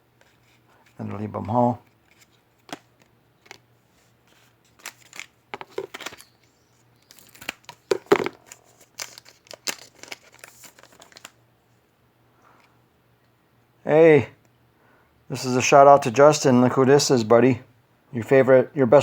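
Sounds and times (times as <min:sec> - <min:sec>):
cards rustling and clicking: 0:00.2 - 0:11.4
wrapper crinkling and tearing: 0:04.3 - 0:11.4.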